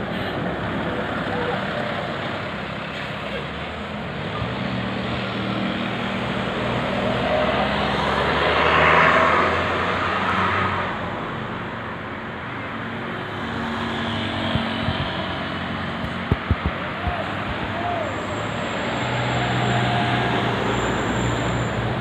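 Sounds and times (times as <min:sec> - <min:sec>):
vehicle passing by: 0:04.5 - 0:10.8.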